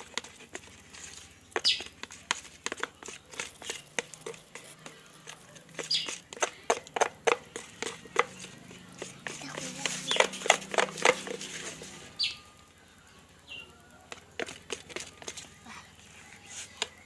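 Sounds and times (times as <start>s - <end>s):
utensil stirring slime: 0.0s - 12.2s, 14.0s - 17.0s
wet hissy scrapes: 7.5s - 12.2s.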